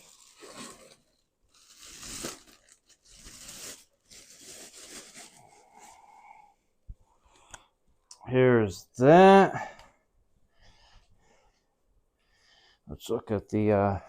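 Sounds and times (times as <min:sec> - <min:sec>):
packaging tearing and rustling: 0:00.0 - 0:05.5.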